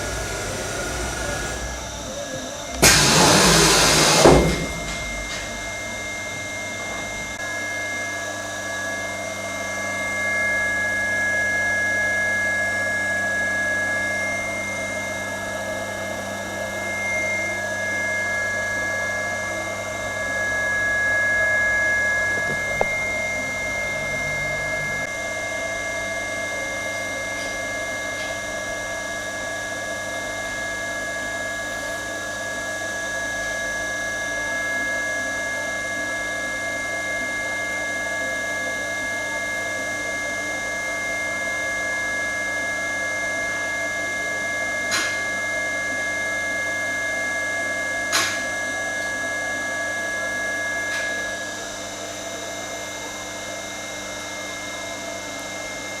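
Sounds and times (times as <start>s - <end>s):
milling machine motor humming: 0.0s - 7.7s, 9.1s - 25.2s.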